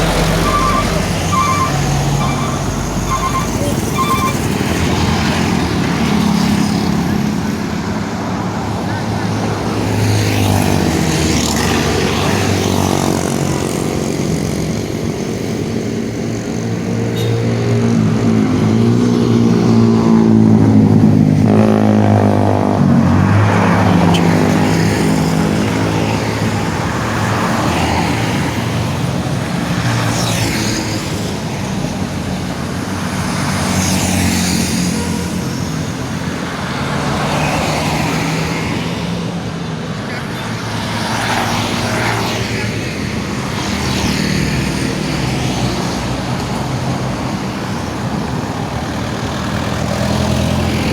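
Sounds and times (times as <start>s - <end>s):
heavy vehicles passing: 0.0s - 50.9s.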